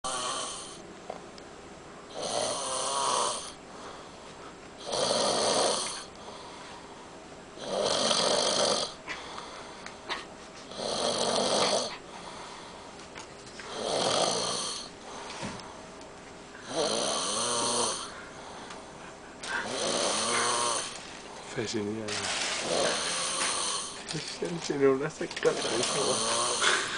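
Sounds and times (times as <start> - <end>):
man snoring: 0.0 - 0.8, 2.1 - 3.6, 4.8 - 6.1, 7.6 - 9.0, 10.7 - 12.0, 13.7 - 14.9, 16.6 - 18.1, 19.4 - 21.0, 22.6 - 24.1, 25.4 - 26.9
quiet breathing: 3.5 - 4.7, 5.9 - 7.2, 9.0 - 10.7, 11.6 - 13.0, 14.7 - 15.9, 17.4 - 21.7, 25.5 - 26.9.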